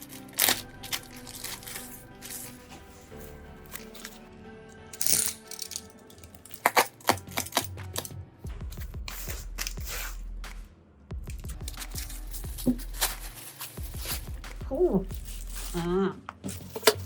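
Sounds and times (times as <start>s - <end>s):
small hard objects clicking: 0.0s - 2.6s, 4.9s - 8.2s, 11.4s - 17.0s
background music: 0.0s - 17.0s.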